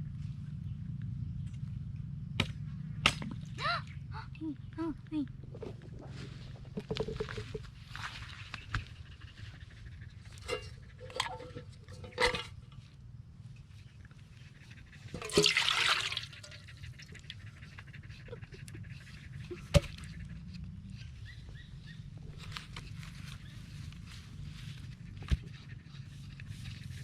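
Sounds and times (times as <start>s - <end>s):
low steady hum: 0.0s - 27.0s
liquid splashing into a pot: 15.2s - 16.5s.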